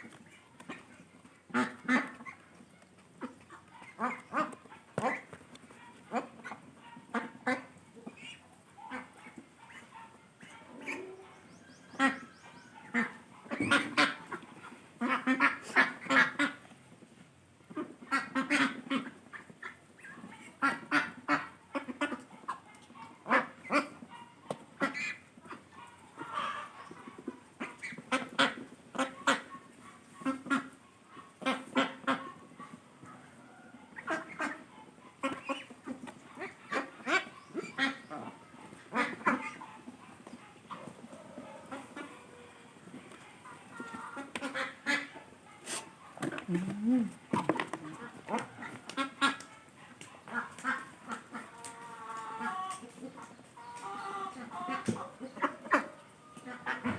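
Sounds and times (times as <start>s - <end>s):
animal calling: 45.7s - 48.8s.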